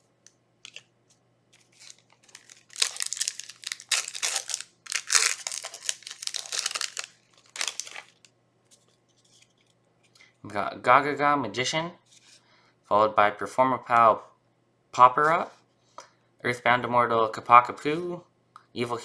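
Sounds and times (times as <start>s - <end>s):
foil wrapper tearing and crinkling: 1.6s - 8.3s.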